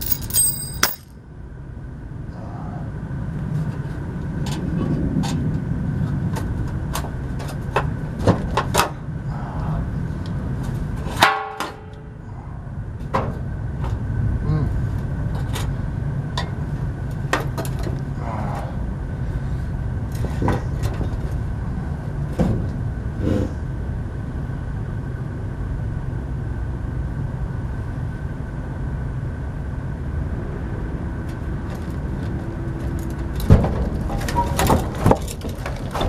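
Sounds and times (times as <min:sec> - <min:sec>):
metal parts knocking and clanking: 0:00.0 - 0:01.1
steady low hum: 0:00.0 - 0:36.0.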